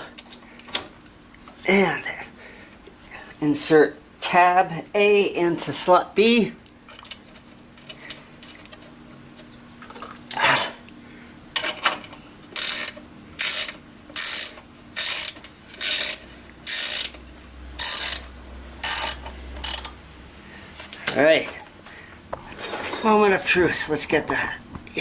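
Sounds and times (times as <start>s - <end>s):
handle ratcheting strokes: 12.5s - 17.2s, 17.8s - 20.0s.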